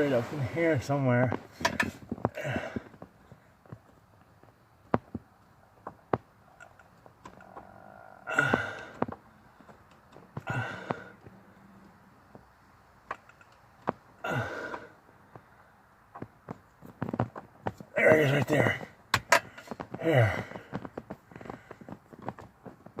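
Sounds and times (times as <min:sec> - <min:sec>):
man exhaling with strain: 0:02.3 - 0:03.0, 0:08.0 - 0:09.1, 0:10.4 - 0:11.2, 0:14.2 - 0:15.0, 0:19.4 - 0:21.8
tools and parts clicking: 0:13.1 - 0:13.7.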